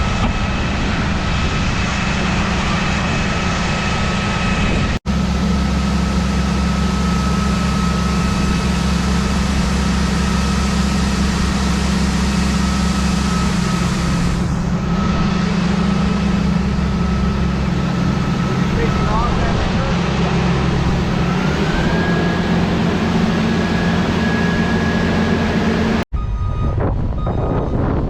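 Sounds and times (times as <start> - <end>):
combine harvester engine drone: 0.0 - 28.0.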